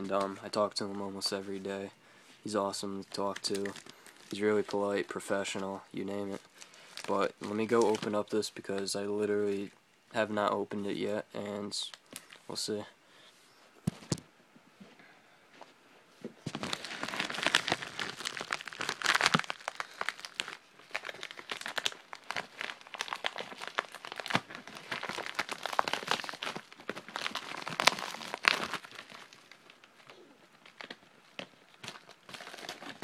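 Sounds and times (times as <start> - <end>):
envelope tearing and crinkling: 16.5 - 33.0.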